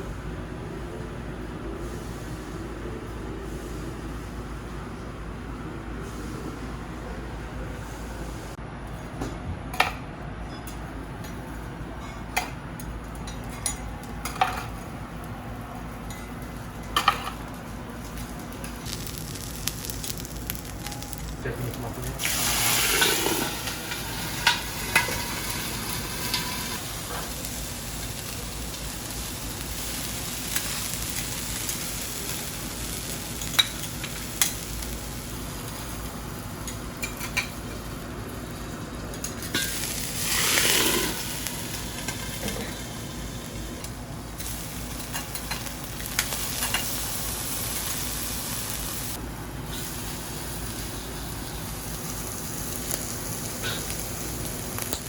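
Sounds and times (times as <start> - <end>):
food sizzling on a griddle: 17.0 - 55.0.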